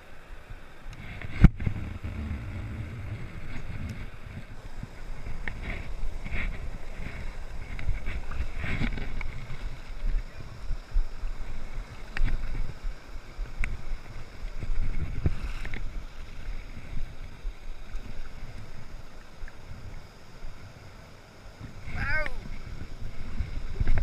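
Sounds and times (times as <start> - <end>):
moving water: 0.0 - 24.0
wind rumbling on microphone: 0.0 - 24.0.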